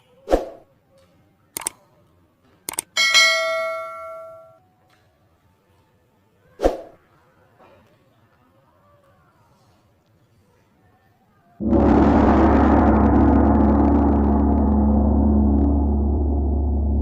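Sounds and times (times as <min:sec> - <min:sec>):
bell-like metallic ring: 0:03.0 - 0:04.6
sharp hits: 0:11.6 - 0:17.0.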